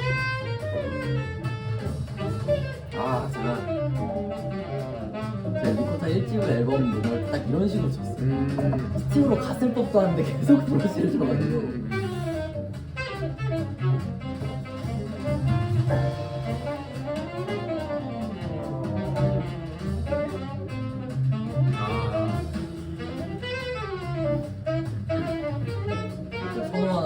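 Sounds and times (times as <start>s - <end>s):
drums played with brushes: 0.0s - 27.0s
saxophone lead: 0.0s - 27.0s
walking double bass: 0.0s - 27.0s.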